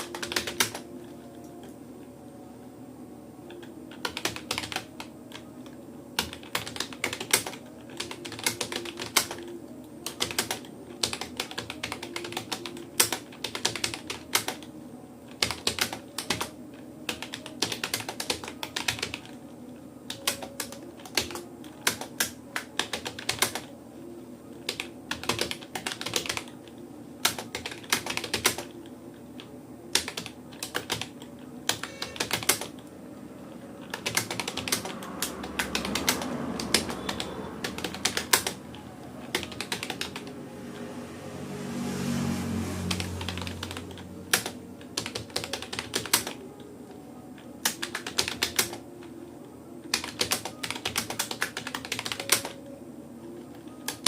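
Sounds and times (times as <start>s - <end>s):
keyboard keystrokes clicking: 0.0s - 1.7s, 3.5s - 5.4s, 6.2s - 14.7s, 15.4s - 16.5s, 17.1s - 19.4s, 20.1s - 23.7s, 24.7s - 26.6s, 27.2s - 28.7s, 29.9s - 32.9s, 33.8s - 40.4s, 42.9s - 46.7s, 47.6s - 48.9s, 49.9s - 52.6s
faint low hum: 0.0s - 54.0s.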